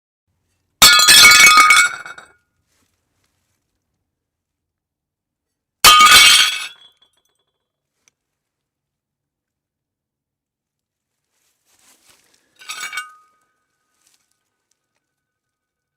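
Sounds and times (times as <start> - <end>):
plates smashing: 0.8 - 2.3, 5.8 - 6.9.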